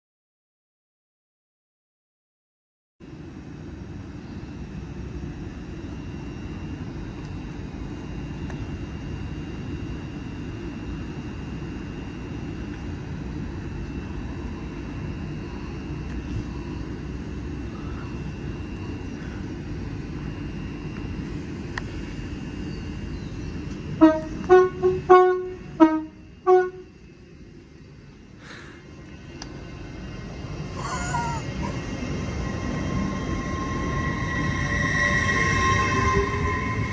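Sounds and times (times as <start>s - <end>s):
vehicle horn honking: 24.0s - 26.9s
low rumble: 27.3s - 36.9s.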